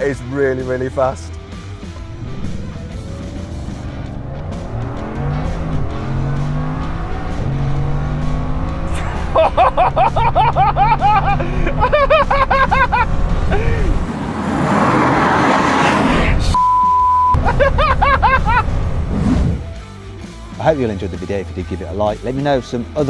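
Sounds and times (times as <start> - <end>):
car engine revving through gears: 1.5 - 16.6, 17.6 - 19.8.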